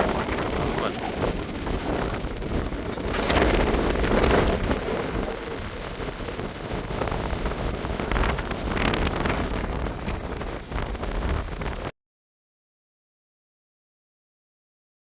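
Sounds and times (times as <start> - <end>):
ocean surf washing on shore: 0.0 - 11.9
wind buffeting microphone: 0.0 - 11.9.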